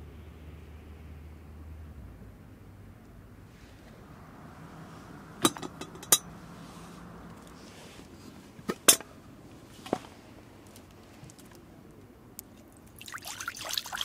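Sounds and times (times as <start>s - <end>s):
camp cookware clinking: 5.4s - 6.3s.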